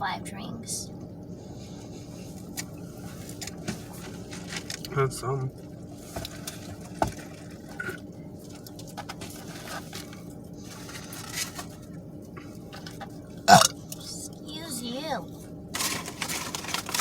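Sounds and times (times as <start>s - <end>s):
wet squishy eating noises: 5.5s - 14.1s.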